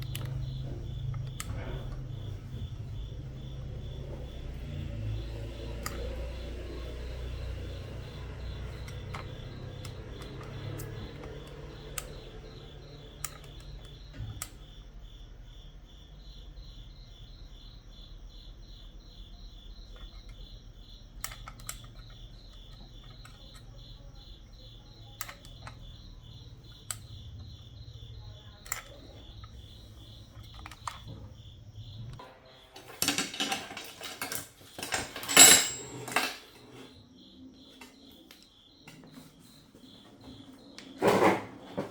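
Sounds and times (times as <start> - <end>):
insect trilling: 0.0 - 32.2.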